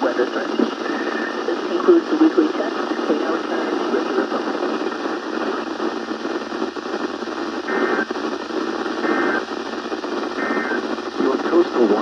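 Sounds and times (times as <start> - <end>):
radio static hiss: 0.0 - 12.0
data tone bursts: 10.4 - 10.8.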